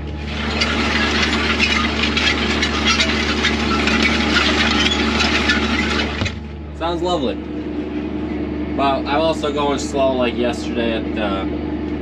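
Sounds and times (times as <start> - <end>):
tractor engine running: 0.0 - 8.3
harrow discs rattling on stones: 0.2 - 6.4.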